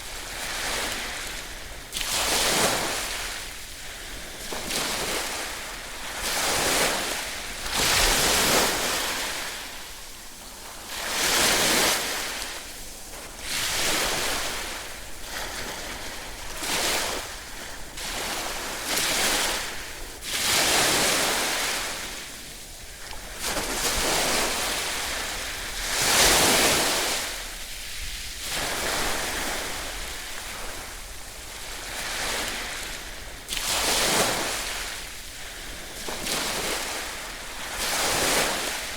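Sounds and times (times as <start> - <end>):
ocean waves breaking on shore: 0.0 - 38.9.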